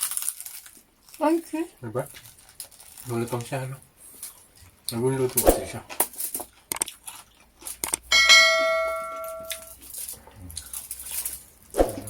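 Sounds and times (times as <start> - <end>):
bell-like ding: 8.1 - 9.7.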